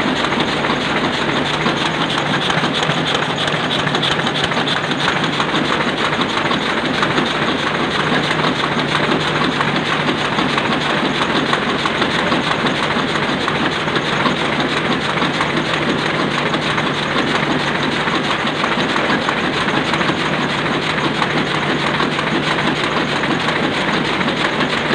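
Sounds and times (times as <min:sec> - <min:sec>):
printing press clattering: 0:00.0 - 0:24.9.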